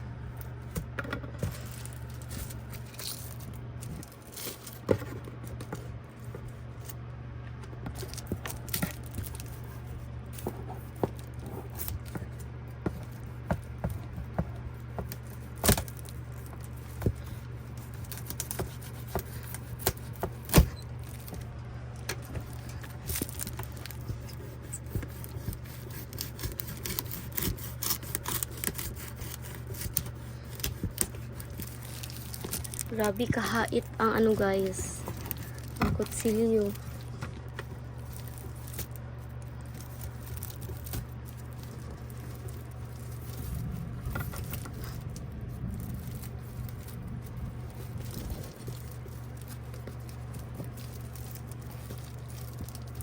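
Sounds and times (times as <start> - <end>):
steady low hum: 0.0 - 53.0
cardboard box scraped and torn: 23.2 - 33.3.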